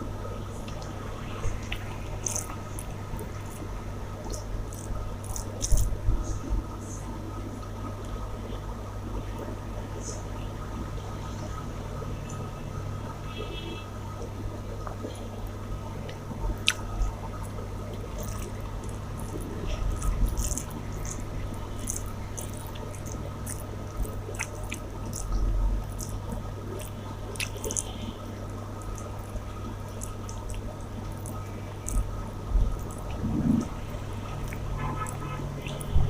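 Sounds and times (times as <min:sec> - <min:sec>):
steady low hum: 0:00.0 - 0:36.0
wet chewing and lip smacks: 0:01.6 - 0:06.0, 0:16.0 - 0:35.9
small mouth clicks: 0:26.8 - 0:28.0.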